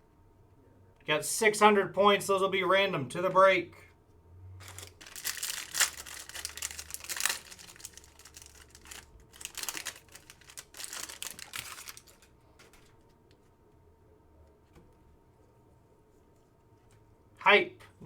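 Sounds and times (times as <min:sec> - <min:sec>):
card pack wrapper crinkling and tearing: 0:04.6 - 0:12.9.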